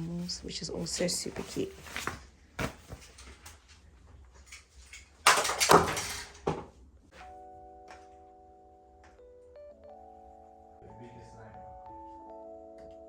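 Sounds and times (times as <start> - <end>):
soft background music: 7.1 - 13.0.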